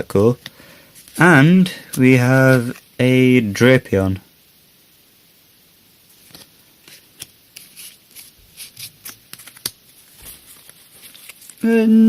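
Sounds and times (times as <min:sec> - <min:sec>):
cards clicking and sliding: 0:00.4 - 0:02.9, 0:06.2 - 0:11.6.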